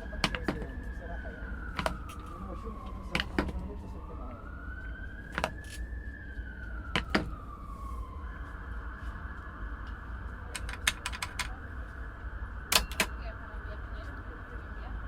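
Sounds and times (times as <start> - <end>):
emergency vehicle siren: 0.0 - 15.0
low rumble of traffic: 0.0 - 15.0
sharp clicks and knocks: 0.2 - 0.7, 7.0 - 7.4, 10.6 - 11.5, 12.7 - 13.2.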